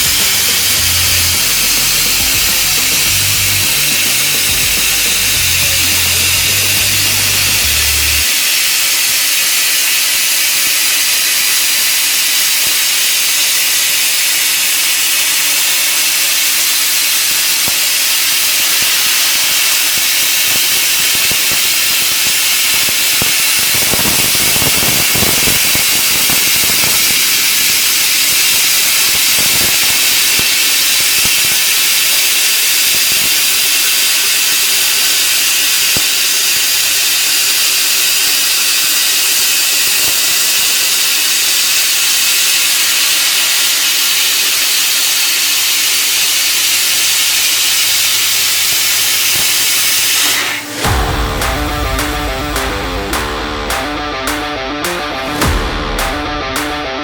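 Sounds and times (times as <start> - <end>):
low rushing noise: 0.0 - 8.2, 50.7 - 57.0
gas jet hissing: 0.0 - 57.0.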